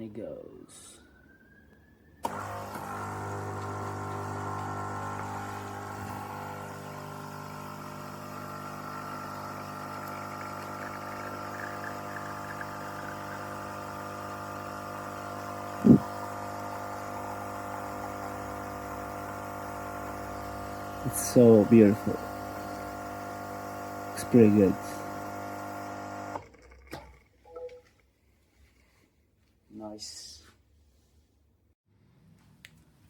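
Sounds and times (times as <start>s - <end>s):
espresso machine pump humming: 2.2s - 27.0s.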